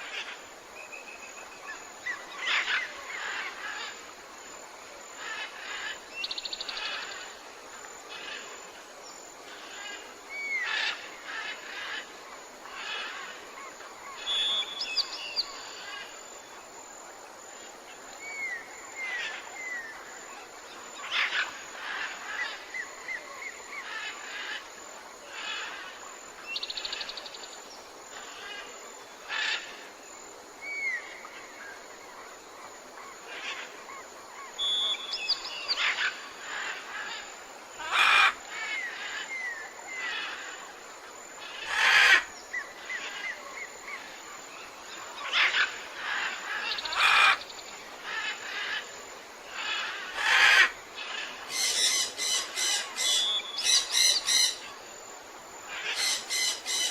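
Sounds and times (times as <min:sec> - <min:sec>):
faint steady hiss: 0:00.0 - 0:56.9
birds chirping and calling: 0:49.6 - 0:54.6, 0:55.7 - 0:56.9.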